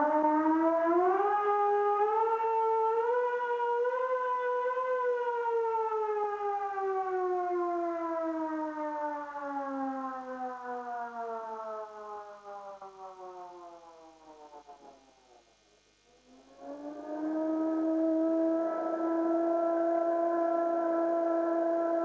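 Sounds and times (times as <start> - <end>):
siren winding down: 16.3 - 22.0.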